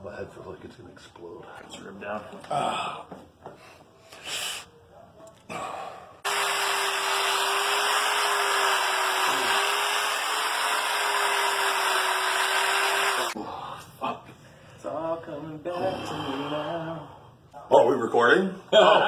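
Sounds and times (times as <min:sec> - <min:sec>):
electric fan motor running: 0:06.2 - 0:13.4.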